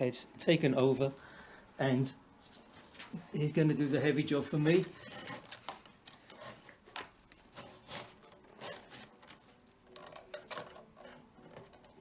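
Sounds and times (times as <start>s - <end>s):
leather strap rubbing and scraping: 4.6s - 12.0s.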